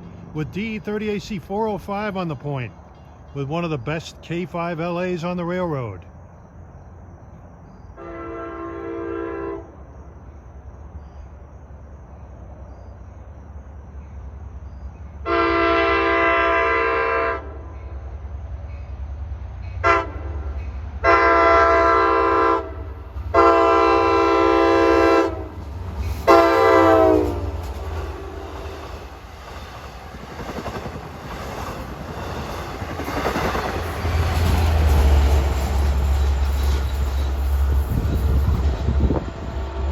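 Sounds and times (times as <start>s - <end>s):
train low rumble: 0.0s - 39.9s
locomotive air horn blasts: 8.0s - 9.8s, 15.2s - 17.7s, 19.8s - 20.3s, 21.0s - 25.6s, 26.2s - 28.5s.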